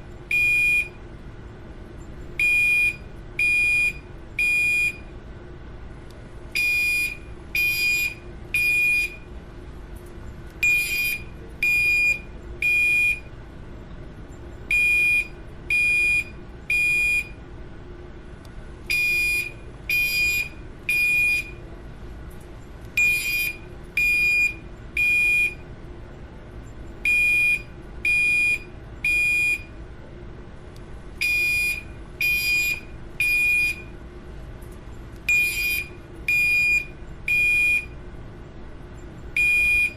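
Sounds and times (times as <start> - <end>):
fire alarm horn beeping: 0.3 - 1.0, 2.4 - 5.1, 6.6 - 9.3, 10.6 - 13.3, 14.7 - 17.4, 18.9 - 21.6, 23.0 - 25.7, 27.0 - 29.8, 31.2 - 34.0, 35.3 - 38.0, 39.3 - 39.9.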